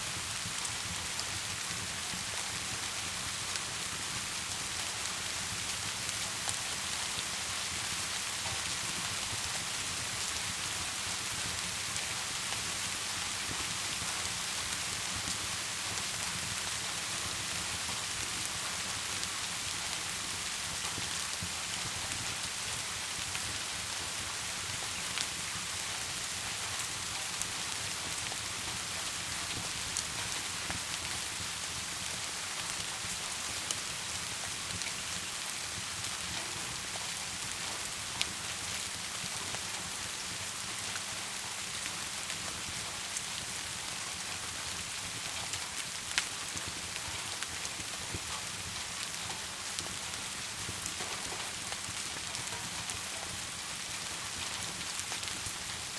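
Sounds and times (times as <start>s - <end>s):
rain falling: 0.1s - 55.9s.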